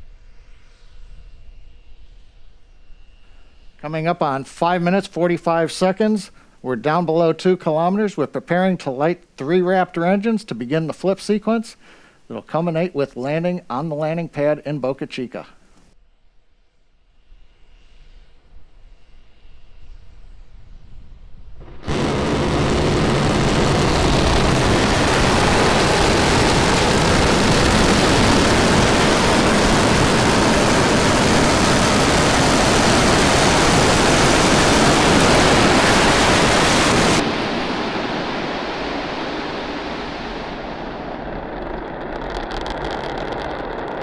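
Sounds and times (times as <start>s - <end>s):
quieter rumble: 20.2s - 44.0s
rocket engines roaring: 21.6s - 44.0s.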